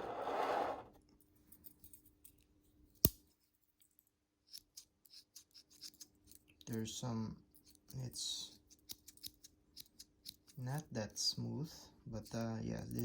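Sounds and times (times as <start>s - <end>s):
scissors clicking open and closed: 4.5s - 6.5s, 8.7s - 10.6s.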